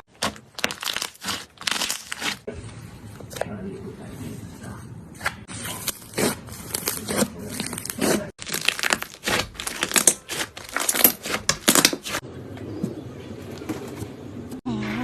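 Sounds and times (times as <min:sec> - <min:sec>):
slime crackling and crinkling: 0:00.1 - 0:02.5, 0:05.8 - 0:12.2.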